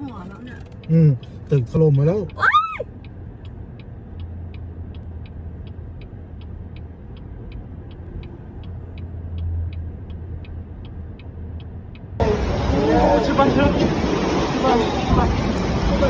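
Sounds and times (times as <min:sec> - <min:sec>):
light even ticking: 0:00.0 - 0:12.2
vehicle low rumble: 0:00.0 - 0:16.0.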